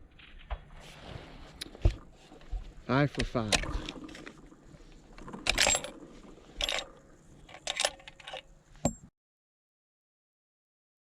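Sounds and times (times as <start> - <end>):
rifle bolt clicks and clinks: 3.1 - 9.1.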